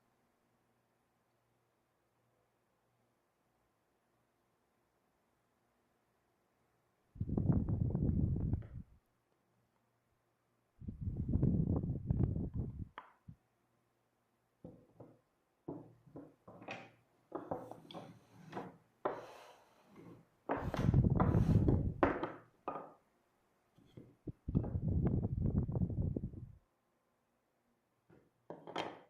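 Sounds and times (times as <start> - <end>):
wood scraping: 16.5 - 22.2.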